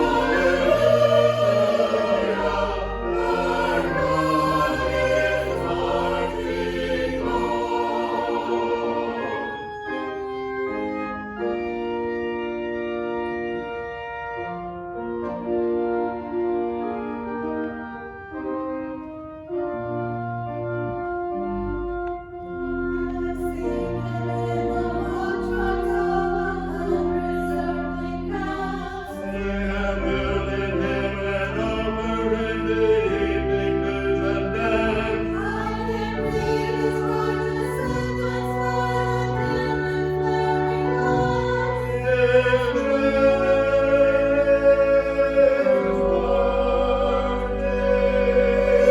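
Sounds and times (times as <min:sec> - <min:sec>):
voices singing: 0:00.0 - 0:09.8, 0:23.2 - 0:48.9
organ playing sustained chords: 0:00.0 - 0:48.9.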